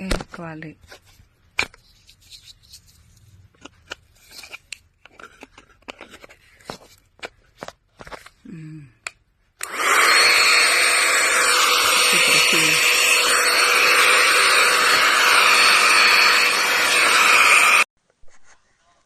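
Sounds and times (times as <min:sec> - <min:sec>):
vacuum motor whining: 0:09.6 - 0:17.9.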